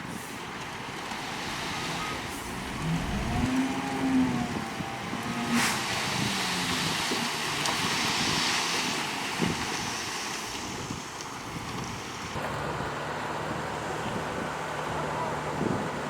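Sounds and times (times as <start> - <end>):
diesel engine drone: 0.0 - 7.7
wind on microphone: 1.0 - 10.0.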